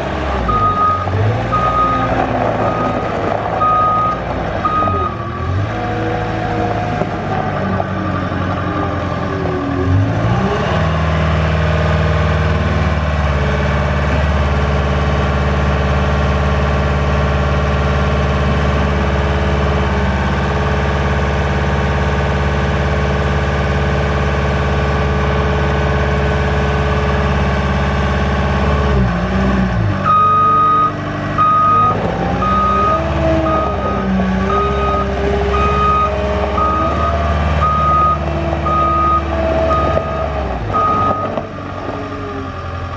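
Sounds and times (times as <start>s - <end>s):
diesel engine running: 0.0s - 42.9s
reversing alarm beeps: 0.5s - 2.1s, 3.6s - 5.2s, 30.1s - 41.4s.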